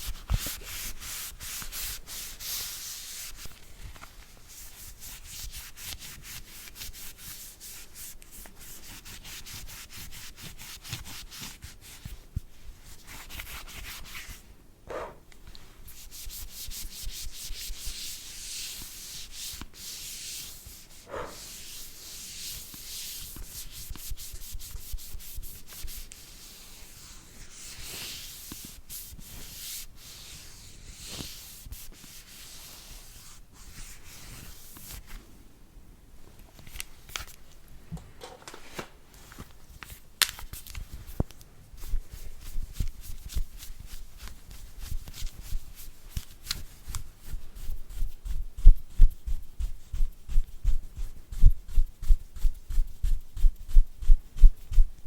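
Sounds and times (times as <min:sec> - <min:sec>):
bristle brush scrubbing: 0:00.0 - 0:03.6, 0:15.9 - 0:35.0.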